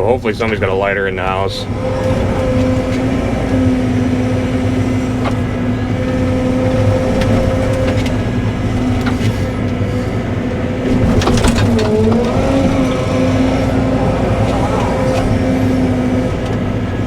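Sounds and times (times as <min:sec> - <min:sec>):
excavator diesel engine running: 0:00.0 - 0:17.0
sharp cracks and knocks: 0:10.9 - 0:12.4.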